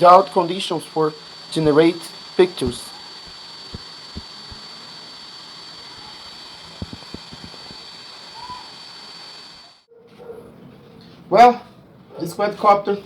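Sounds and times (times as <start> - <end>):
drone cooling fan hiss and whine: 0.0 - 9.8.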